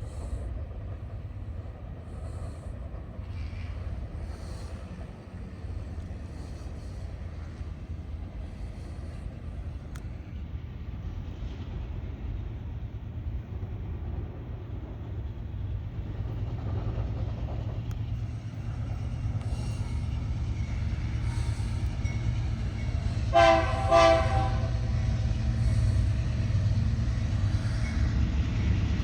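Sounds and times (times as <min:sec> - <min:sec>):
freight train rumbling past: 0:00.0 - 0:29.0
train air horn blasts: 0:23.2 - 0:26.0.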